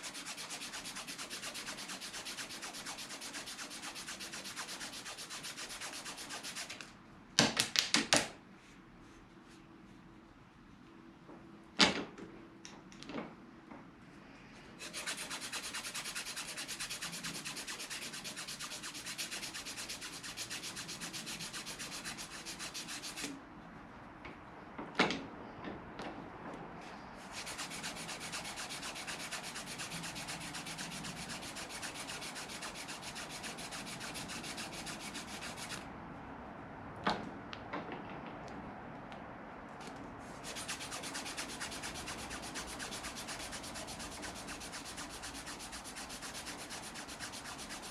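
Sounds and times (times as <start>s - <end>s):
sandpaper rasping: 0.0s - 6.9s, 14.8s - 23.3s, 27.2s - 35.9s, 40.2s - 47.9s.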